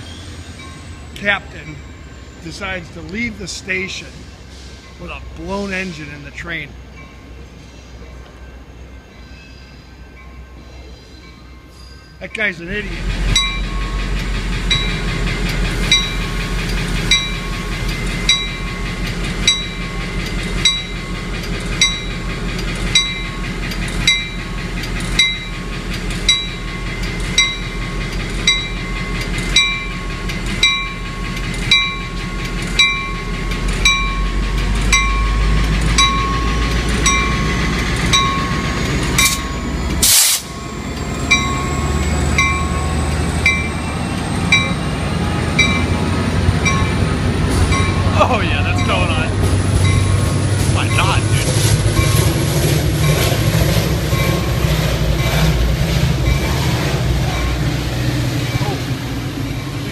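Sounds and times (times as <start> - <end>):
diesel locomotive engine rumbling: 0.0 - 59.9
bell ringing: 13.4 - 14.1, 38.1 - 43.8, 47.7 - 53.4.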